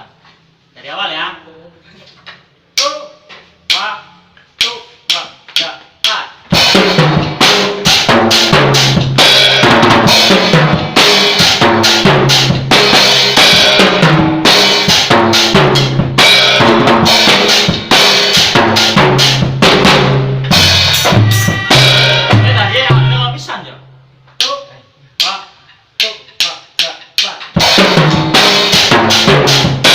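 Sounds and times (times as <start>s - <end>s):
drum kit groove: 2.4s - 23.6s, 24.2s - 29.9s
low pitched notes: 19.0s - 24.1s.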